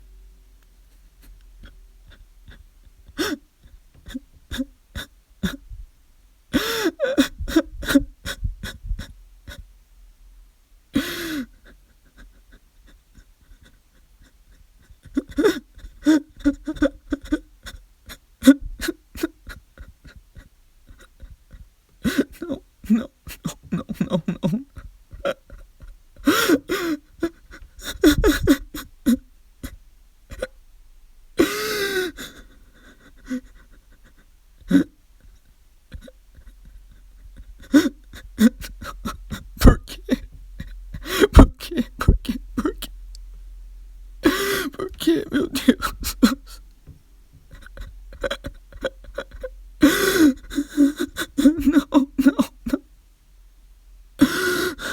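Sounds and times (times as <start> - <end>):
man sobbing and gasping: 10.9 - 30.5, 31.4 - 42.9, 44.2 - 46.6, 47.5 - 52.9, 54.2 - 54.9.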